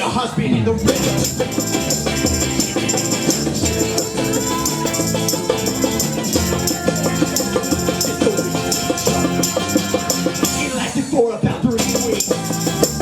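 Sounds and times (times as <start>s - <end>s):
shaker percussion: 0.8s - 10.9s, 11.6s - 13.0s
live band playing: 0.9s - 10.9s.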